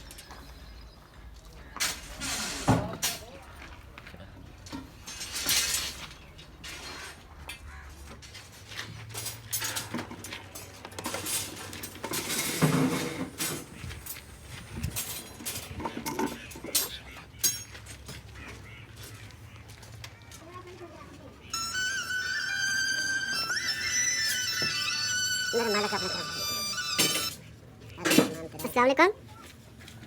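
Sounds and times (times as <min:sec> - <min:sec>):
metal tools clinking and knocking: 0:09.2 - 0:14.3, 0:14.9 - 0:17.9, 0:21.6 - 0:27.4.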